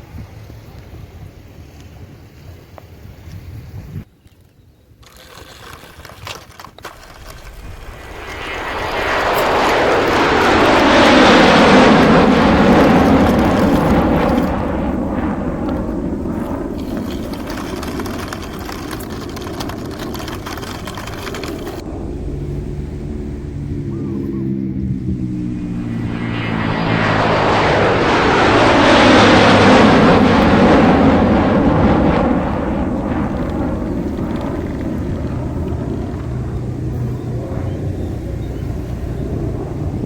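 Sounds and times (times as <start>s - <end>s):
passing vehicle: 16.9s - 40.0s.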